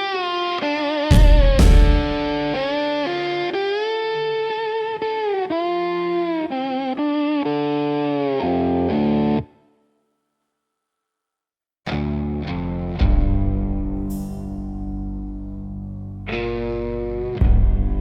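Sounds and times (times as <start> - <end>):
loud low thump: 1.1 - 2.6
low bass part: 1.1 - 2.6, 12.9 - 16.2, 17.4 - 18.0
distorted electric guitar lead: 1.1 - 2.8.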